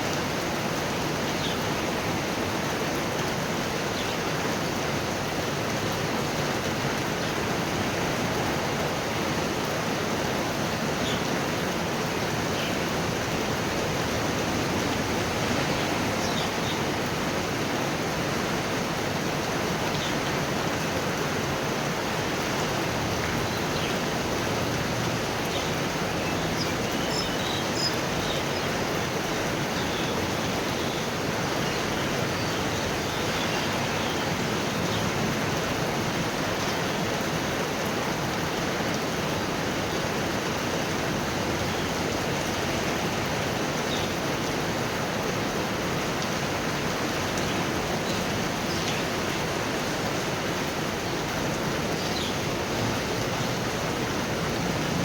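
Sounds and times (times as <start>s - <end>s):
heavy rain falling: 0.0s - 55.0s.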